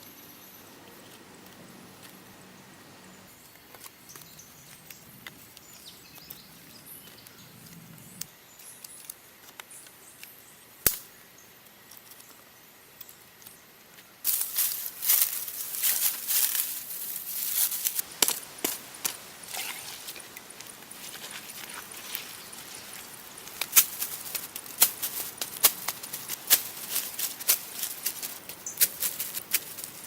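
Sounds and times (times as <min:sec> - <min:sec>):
crunching and rustling: 0:14.2 - 0:30.0.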